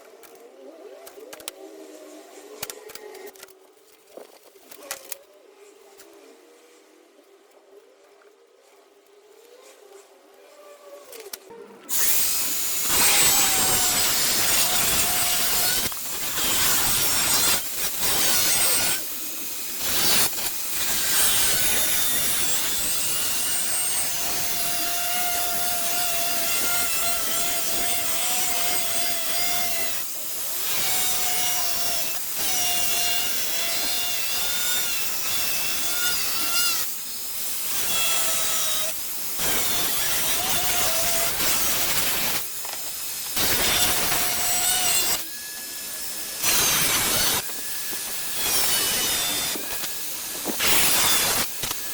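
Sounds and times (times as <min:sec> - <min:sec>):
power tool cutting sheet metal: 0:11.9 - 0:51.9.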